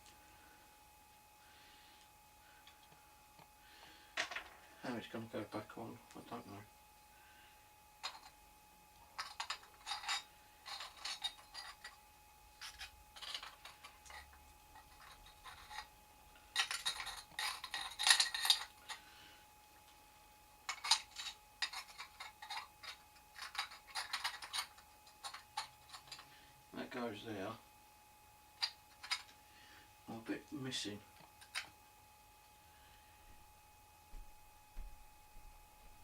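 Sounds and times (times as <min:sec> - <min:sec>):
faint steady tone: 0:00.0 - 0:36.0.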